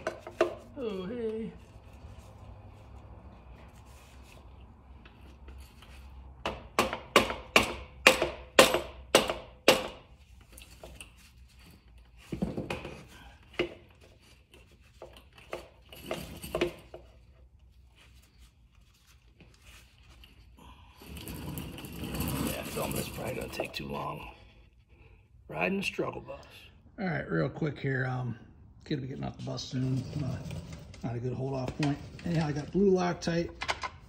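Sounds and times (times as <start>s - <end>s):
parts clunking and rattling: 0.0s - 0.8s, 4.9s - 18.4s, 30.2s - 34.0s.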